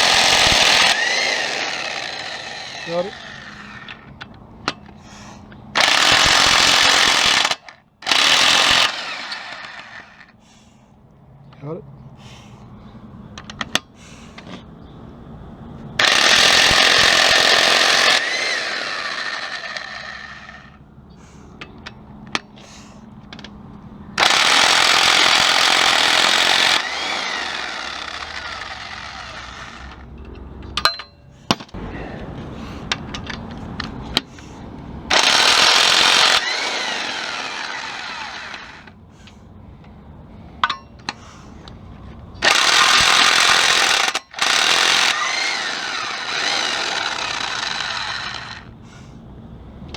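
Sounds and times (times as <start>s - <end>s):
impact wrench hammering: 30.7s - 31.8s
metal clicks and clanks: 32.9s - 34.4s.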